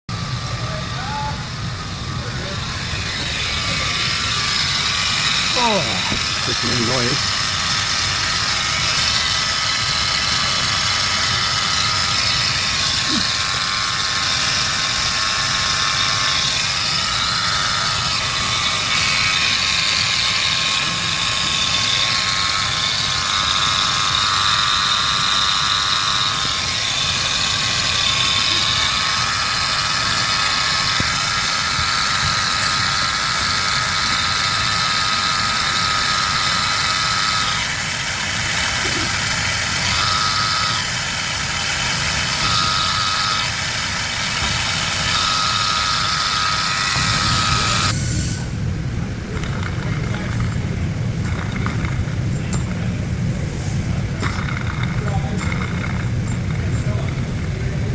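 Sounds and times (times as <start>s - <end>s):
engine idling: 0.1s - 57.9s
grinding noise from engine: 0.1s - 57.9s.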